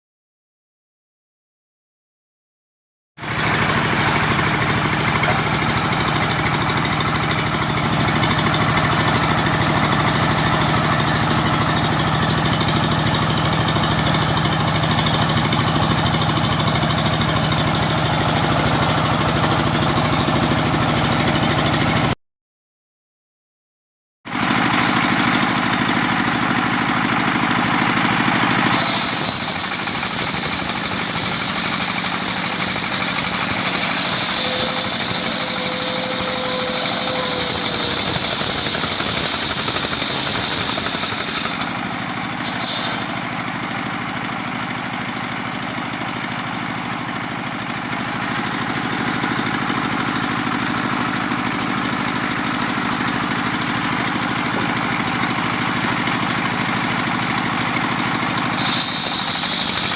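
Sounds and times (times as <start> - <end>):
sawmill engine running: 3.2 - 22.2, 24.3 - 59.9
saw blade cutting hiss: 28.6 - 43.4, 58.4 - 59.9.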